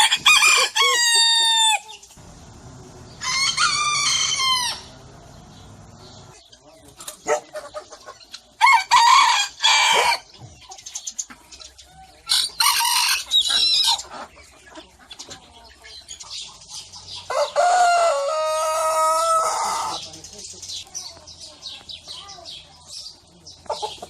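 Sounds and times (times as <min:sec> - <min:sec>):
rooster crowing: 0:00.0 - 0:01.8, 0:03.2 - 0:05.0, 0:17.3 - 0:20.0.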